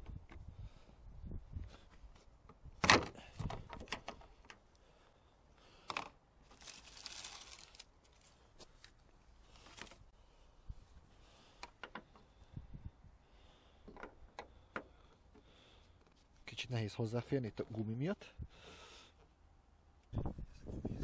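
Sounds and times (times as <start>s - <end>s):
tools clicking and knocking: 13.8s - 15.4s.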